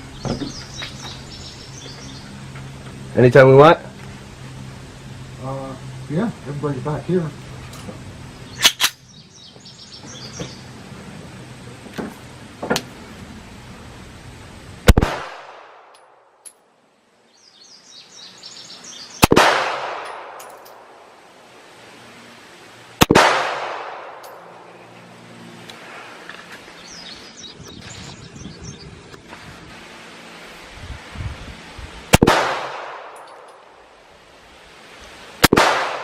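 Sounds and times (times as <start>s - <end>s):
faint gunshots: 14.9s - 15.9s, 19.2s - 20.4s, 23.0s - 24.2s, 32.1s - 33.3s, 35.4s - 36.0s
pistol shots with echo: 14.9s - 15.9s, 19.2s - 20.6s, 23.0s - 24.3s, 32.1s - 33.5s, 35.4s - 36.0s.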